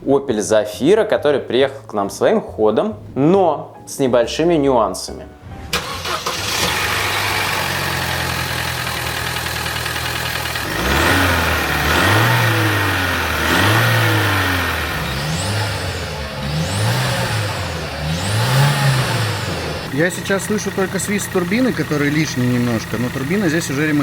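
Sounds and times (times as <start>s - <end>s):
car engine idling and revving: 5.7s - 24.0s.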